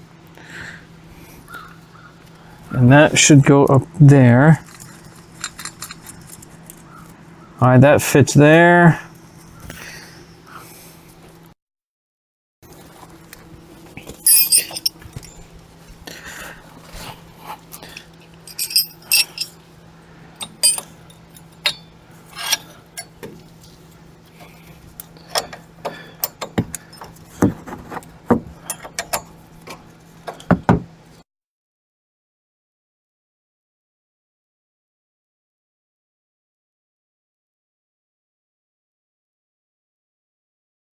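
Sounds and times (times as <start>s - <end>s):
metal tools clinking and knocking: 4.6s - 6.8s, 14.0s - 15.4s, 17.8s - 19.6s, 20.4s - 23.3s, 25.2s - 27.8s, 28.4s - 29.4s.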